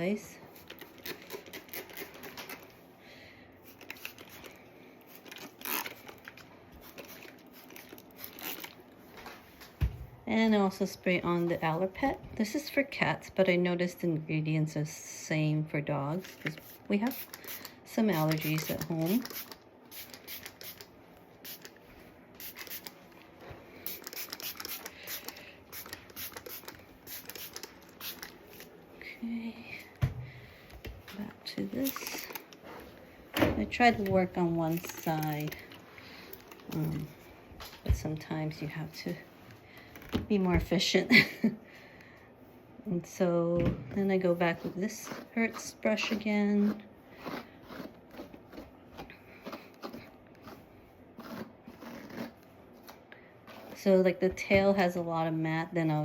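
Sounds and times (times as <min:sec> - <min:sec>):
spray bottle spritzes: 0:16.6 - 0:20.9, 0:23.8 - 0:28.3.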